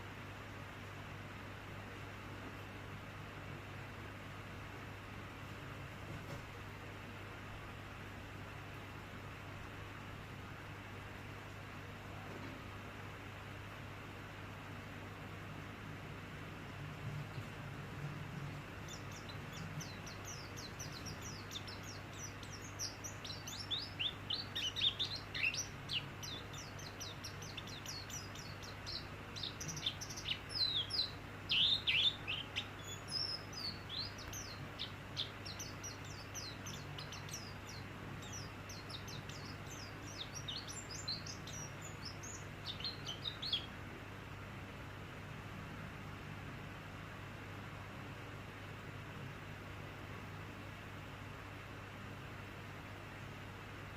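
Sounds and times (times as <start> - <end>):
steady hiss and low hum: 0.0 - 53.9
bird singing high chirps: 18.8 - 43.8.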